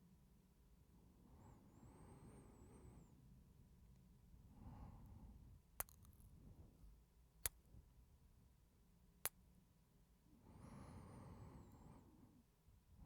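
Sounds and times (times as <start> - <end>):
quiet breathing: 1.1 - 3.6, 4.4 - 5.6, 10.3 - 12.5.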